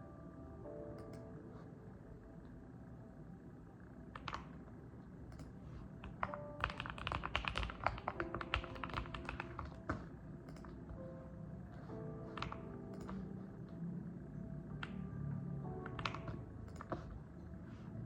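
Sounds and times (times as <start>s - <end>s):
soft background music: 0.0s - 18.0s
mechanical keyboard typing: 4.1s - 4.6s, 5.2s - 11.1s, 12.3s - 13.4s, 15.8s - 17.3s.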